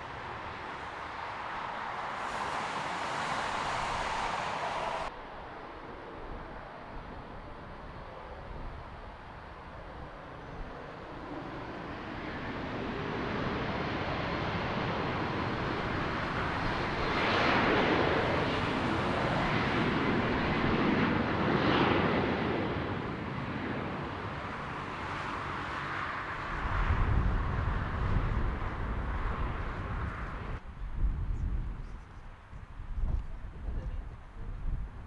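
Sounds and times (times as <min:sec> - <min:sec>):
jet engines roaring: 0:00.0 - 0:05.1, 0:11.9 - 0:30.6.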